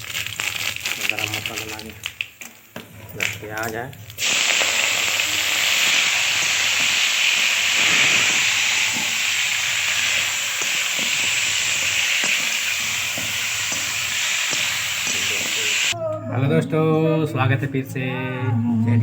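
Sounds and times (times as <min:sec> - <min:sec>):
onions sizzling in hot oil: 0:04.2 - 0:16.0.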